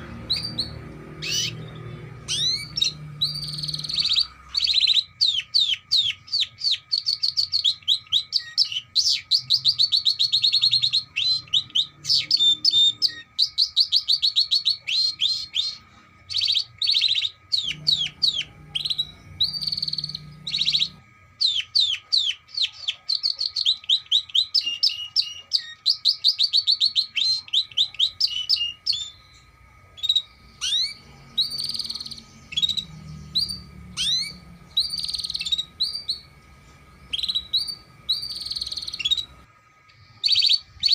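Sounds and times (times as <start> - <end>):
canary singing: 0.0 - 40.9.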